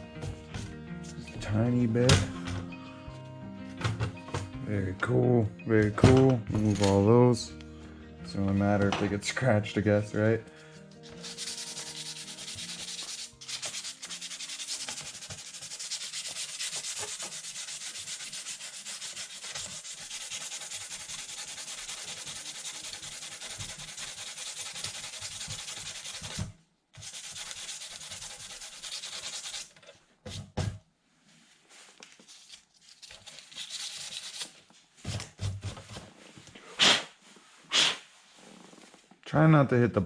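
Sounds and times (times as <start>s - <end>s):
sandpaper rubbing painted surface: 11.0s - 26.4s, 27.0s - 29.7s, 33.1s - 34.6s.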